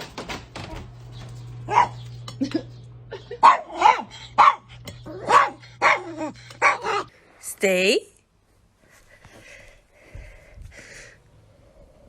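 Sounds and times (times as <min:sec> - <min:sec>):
low hum: 0:00.1 - 0:07.3
dog barking: 0:01.6 - 0:02.1, 0:03.4 - 0:07.1.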